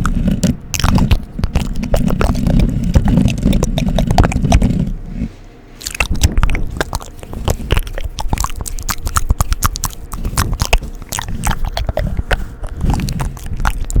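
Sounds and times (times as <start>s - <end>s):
wet mouth clicks and smacks: 0.0s - 4.7s, 5.8s - 14.0s.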